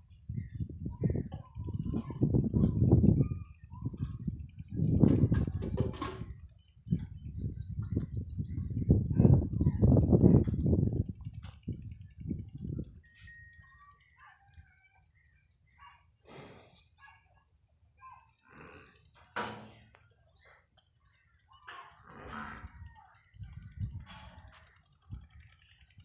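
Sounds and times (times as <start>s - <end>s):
small birds chirping: 6.3s - 26.0s.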